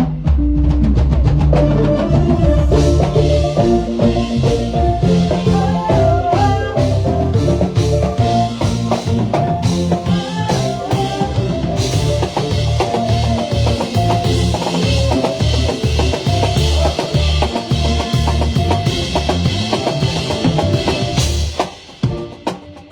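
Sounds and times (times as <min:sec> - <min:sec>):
heavy bass line: 0:00.0 - 0:21.6
drum kit beat: 0:00.0 - 0:22.9
live band playing: 0:00.0 - 0:22.9.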